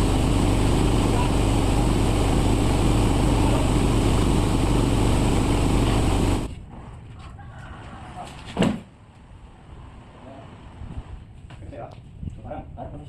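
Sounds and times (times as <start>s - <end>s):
sawmill machinery running: 0.0s - 6.5s.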